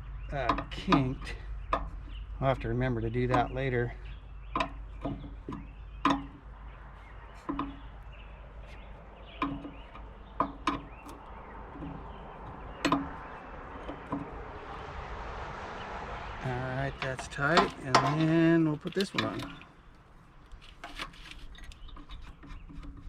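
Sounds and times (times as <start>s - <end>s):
wrench clicking and knocking: 4.5s - 6.5s, 7.4s - 14.7s, 16.9s - 19.7s.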